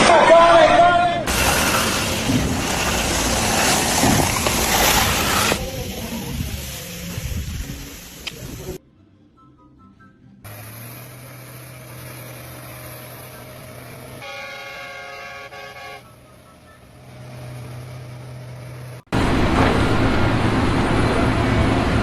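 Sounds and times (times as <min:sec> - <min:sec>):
loud noisy vehicle rumble: 0:00.0 - 0:08.8, 0:10.5 - 0:22.0
vehicle horn: 0:14.2 - 0:16.2
low engine hum: 0:16.0 - 0:22.0.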